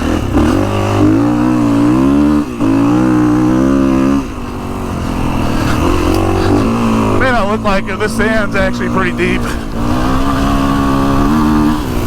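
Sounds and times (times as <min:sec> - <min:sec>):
motorcycle engine under throttle: 0:00.0 - 0:12.0.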